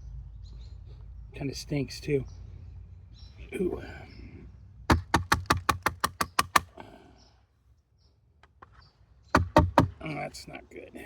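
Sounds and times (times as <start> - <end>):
rapid sharp taps on plastic: 4.9 - 6.7, 9.4 - 10.0.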